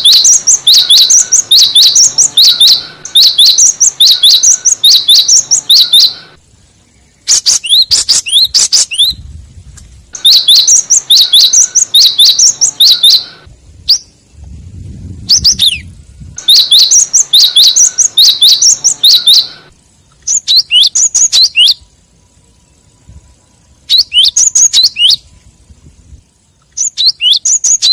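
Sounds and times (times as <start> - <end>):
bird chirping: 0.0 - 27.9
low rumble: 9.1 - 10.2, 13.5 - 16.5.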